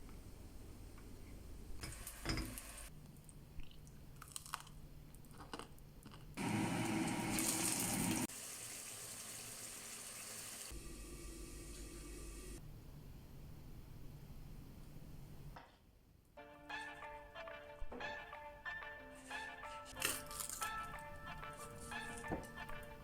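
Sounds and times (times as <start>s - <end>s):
tap water running: 6.4s - 12.6s.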